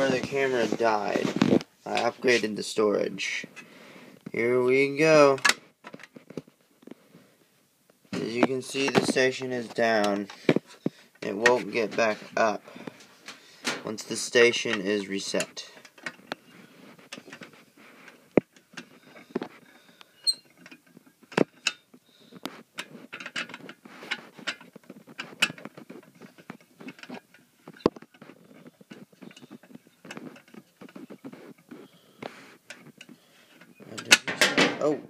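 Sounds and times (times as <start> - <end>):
alarm pull station clicking and scraping: 20.2 - 34.6.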